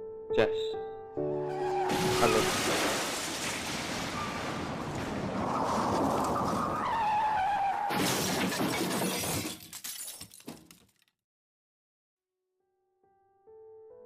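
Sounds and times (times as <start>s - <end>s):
squeal gliding down in pitch: 1.4s - 2.5s
crash with shattering: 1.9s - 10.8s
clatter of falling pieces: 7.9s - 11.0s.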